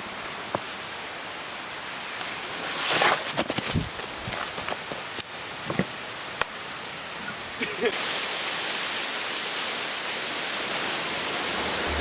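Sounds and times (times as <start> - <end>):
light footsteps: 3.0 - 5.9
waterfall rushing: 7.5 - 12.0.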